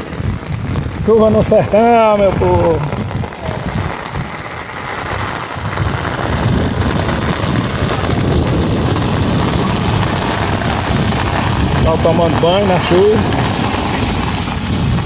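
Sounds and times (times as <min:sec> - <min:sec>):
heavy rain pouring: 0:00.0 - 0:15.0
wind gusts buffeting microphone: 0:00.0 - 0:15.0.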